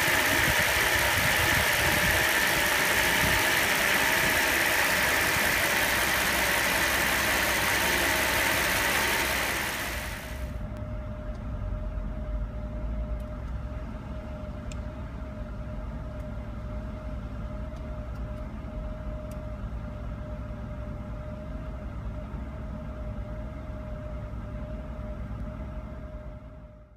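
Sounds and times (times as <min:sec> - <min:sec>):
car engine idling roughly: 0:00.0 - 0:10.4
loud hiss: 0:00.0 - 0:10.5.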